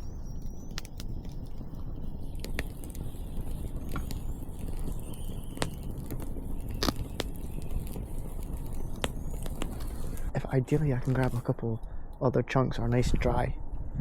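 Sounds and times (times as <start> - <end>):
campfire crackling: 0.0 - 12.2
steady low rumble: 0.0 - 14.0
sharp pops: 2.3 - 11.4.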